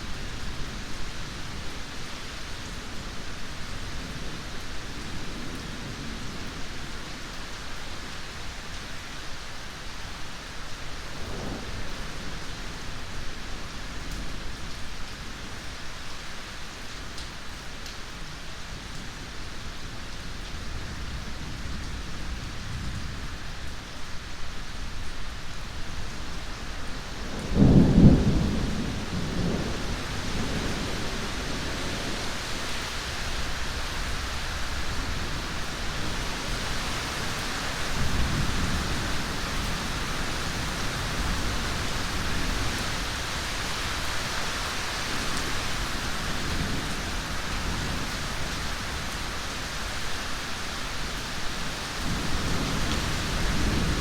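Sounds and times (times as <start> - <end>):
heavy rain: 0.0 - 54.0
thunder clap and rumble: 27.2 - 32.5, 52.0 - 54.0.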